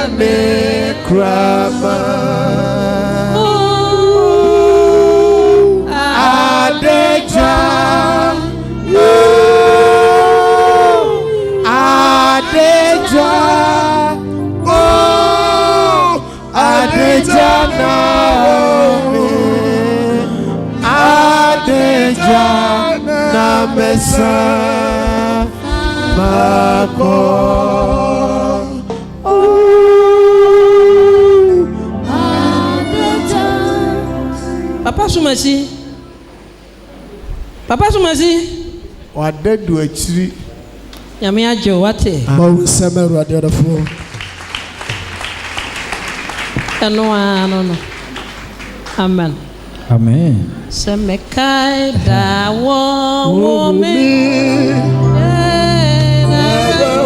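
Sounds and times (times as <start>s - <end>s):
gospel singing: 0.0s - 36.8s, 43.5s - 57.0s.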